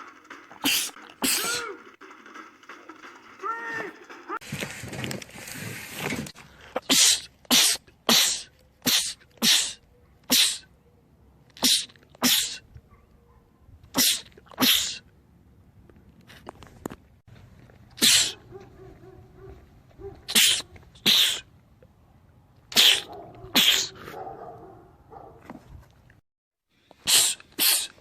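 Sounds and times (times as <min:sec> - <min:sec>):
breathy noise: 0:00.0 - 0:04.4
man sneezing: 0:00.6 - 0:01.8, 0:06.8 - 0:10.7, 0:11.6 - 0:12.6, 0:13.9 - 0:15.0, 0:18.0 - 0:18.4, 0:20.3 - 0:21.5, 0:22.7 - 0:24.1, 0:27.0 - 0:28.0.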